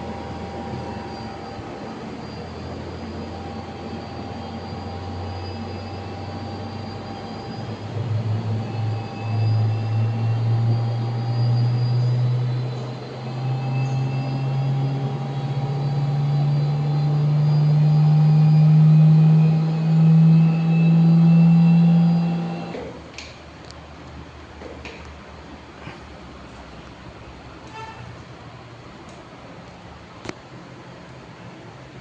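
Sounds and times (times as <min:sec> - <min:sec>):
centrifuge motor hum rising: 0:00.0 - 0:23.0
faint whining tones: 0:00.0 - 0:23.8.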